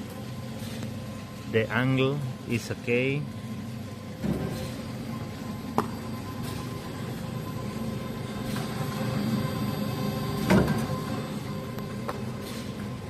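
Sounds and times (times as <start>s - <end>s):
machine running: 0.0s - 13.0s
loud clunk: 10.4s - 11.1s.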